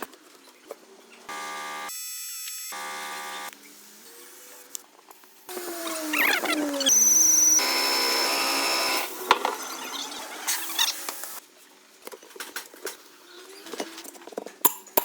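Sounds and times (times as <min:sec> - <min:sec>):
small power tool running: 0:01.3 - 0:03.5, 0:05.5 - 0:11.4.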